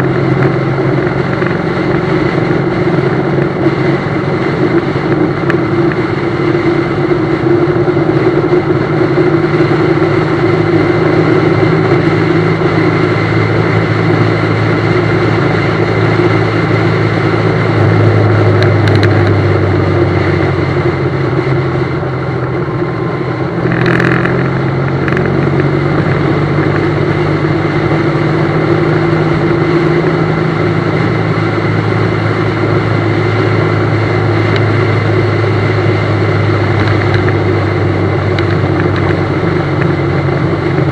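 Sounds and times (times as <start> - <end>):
motorcycle engine running: 0.0 - 40.9
road and wind noise: 0.0 - 40.9.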